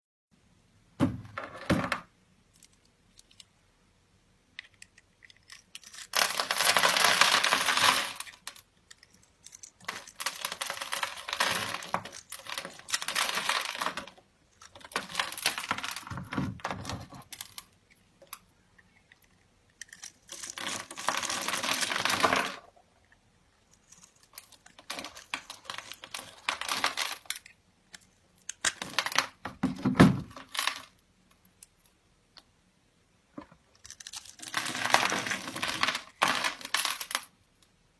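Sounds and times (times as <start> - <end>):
small hard objects clattering: 5.2 - 22.8, 23.7 - 27.5, 28.5 - 30.9, 33.4 - 37.3.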